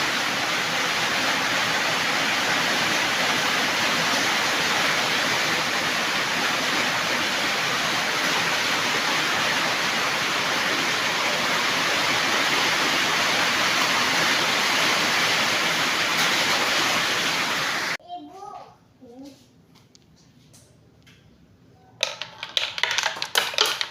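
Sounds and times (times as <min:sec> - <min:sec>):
balls rattling down plastic track: 0:22.0 - 0:23.9.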